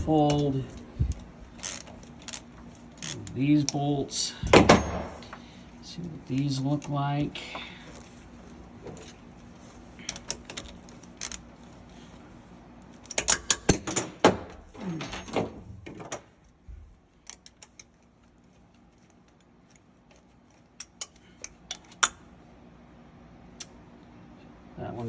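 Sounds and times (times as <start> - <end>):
ratchet clicking: 1.1 - 3.8, 10.0 - 11.4.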